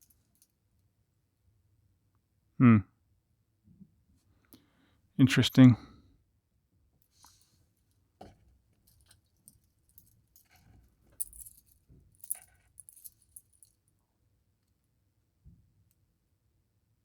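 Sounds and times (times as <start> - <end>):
metal watch links clinking: 8.9 - 13.8.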